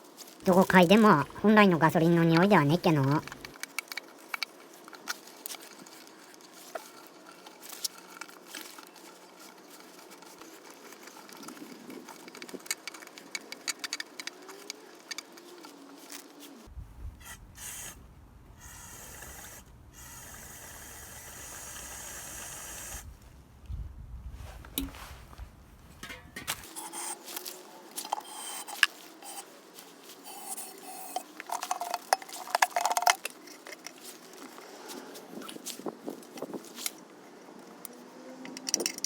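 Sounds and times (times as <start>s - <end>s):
small parts clicking and tapping: 1.9s - 16.5s, 30.1s - 34.7s, 37.8s - 39.0s.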